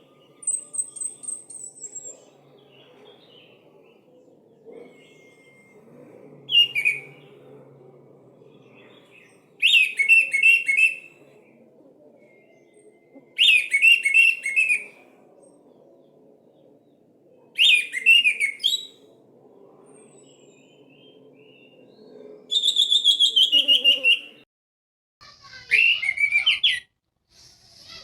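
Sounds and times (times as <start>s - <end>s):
thrush singing whistled phrases: 4.8s - 7.3s, 9.6s - 11.2s, 12.2s - 15.0s, 17.6s - 19.1s, 22.5s - 24.4s.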